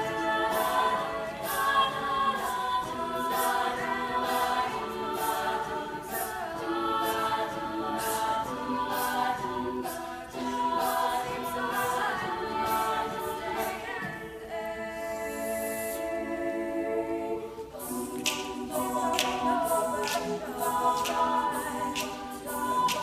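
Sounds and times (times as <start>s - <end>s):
group singing a cappella: 0.0s - 23.0s.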